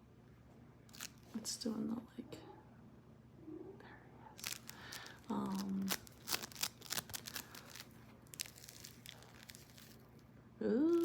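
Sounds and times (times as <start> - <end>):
foam squeezed with sticky crackles: 0.9 - 1.3, 4.4 - 10.0.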